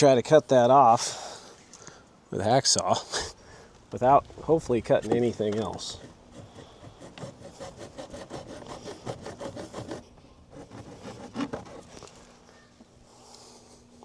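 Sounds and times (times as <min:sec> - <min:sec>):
hacksaw sawing: 0:05.0 - 0:12.2.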